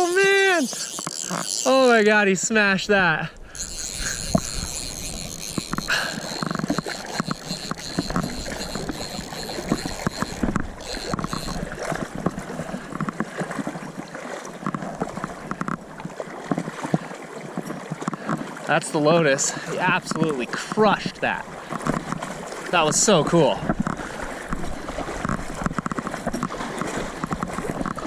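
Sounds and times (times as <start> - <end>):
river water rushing and splashing: 0.0 - 28.0
small knocks and clicks: 0.7 - 1.7, 3.6 - 13.3, 14.6 - 15.9, 21.7 - 24.6, 25.2 - 28.0.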